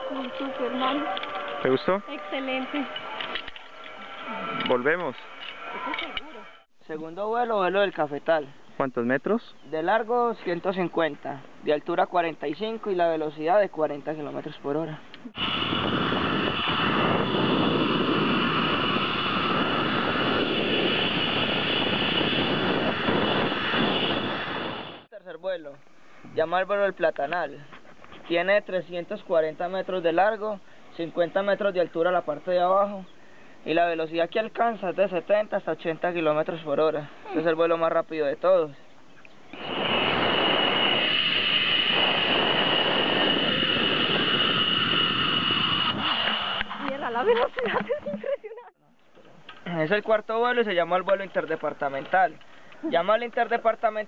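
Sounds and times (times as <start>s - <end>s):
zip-line trolley whirring on cable: 0.0s - 6.7s, 15.4s - 24.8s, 39.6s - 47.8s.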